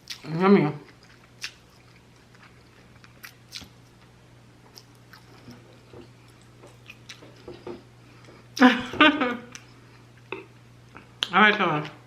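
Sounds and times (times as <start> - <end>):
person chewing food: 0.0 - 8.6.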